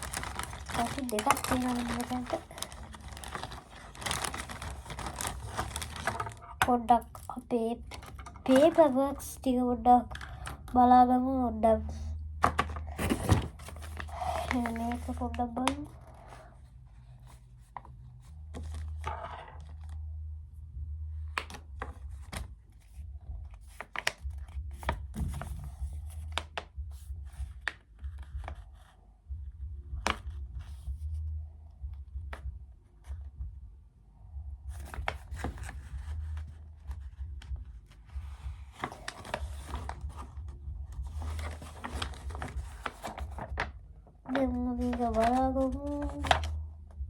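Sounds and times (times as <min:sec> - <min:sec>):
paper rustling and tearing: 0:00.0 - 0:06.7, 0:12.5 - 0:16.4, 0:38.3 - 0:43.7, 0:44.3 - 0:46.6
pulsing low rumble: 0:00.0 - 0:47.0.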